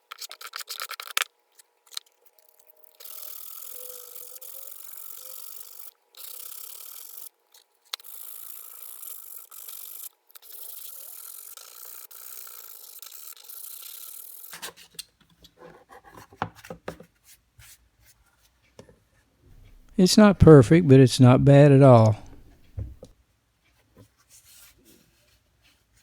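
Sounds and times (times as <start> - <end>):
wood being sanded: 3.0 - 7.3.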